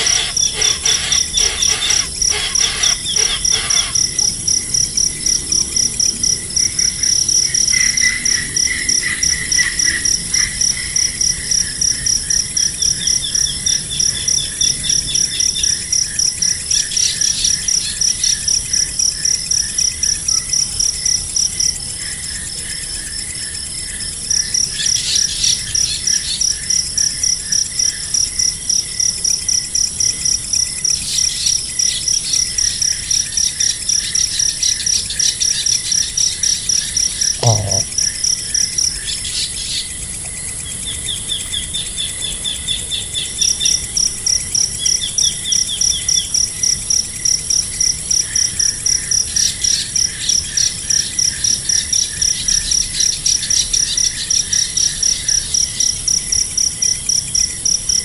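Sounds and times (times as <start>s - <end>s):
bird chirps: 0.0s - 4.0s
insects chirping: 0.0s - 58.0s.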